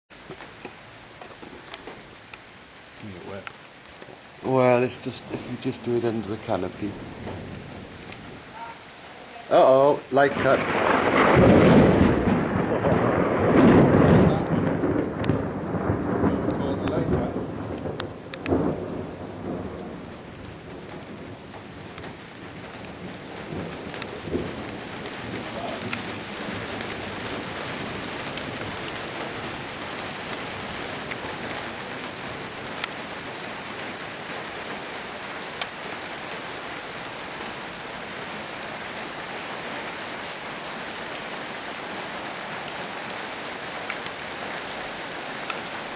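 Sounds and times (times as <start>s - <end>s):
steady rain falling: 0.1s - 45.9s
thunder rumbling: 4.4s - 36.2s.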